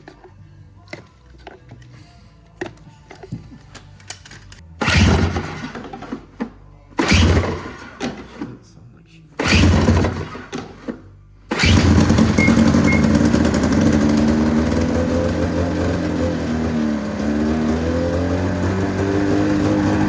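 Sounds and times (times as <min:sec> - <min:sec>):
snowmobile engine firing: 0:04.8 - 0:06.2, 0:07.0 - 0:08.5, 0:09.4 - 0:10.8, 0:11.5 - 0:20.0.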